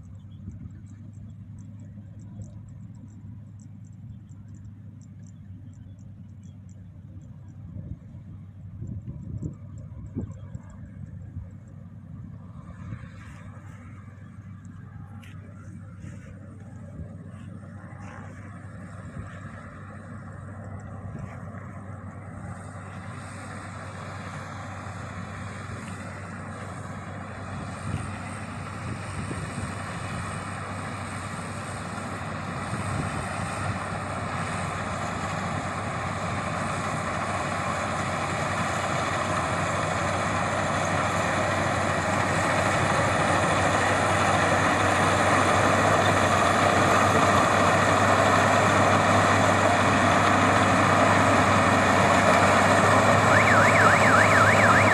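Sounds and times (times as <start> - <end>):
combine harvester engine running: 0.0 - 54.9.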